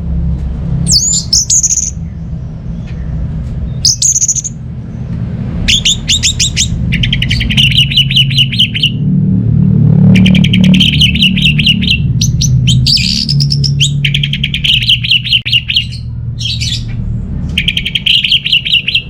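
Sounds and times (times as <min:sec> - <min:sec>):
steady low hum: 0:00.0 - 0:19.0
thrush singing: 0:05.6 - 0:09.1, 0:09.9 - 0:19.0.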